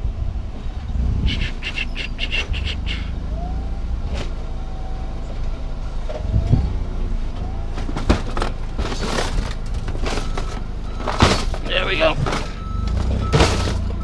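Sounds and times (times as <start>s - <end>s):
engine low rumble: 0.0s - 14.0s
metal knocks and clanks: 7.4s - 14.0s.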